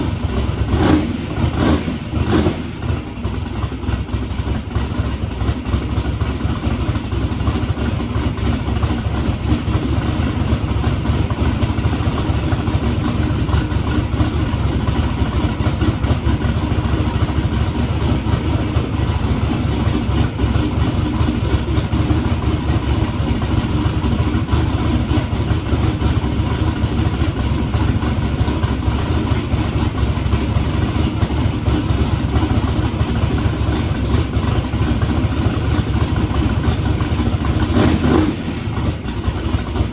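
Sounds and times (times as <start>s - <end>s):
car engine idling loud and choppy: 0.0s - 39.9s.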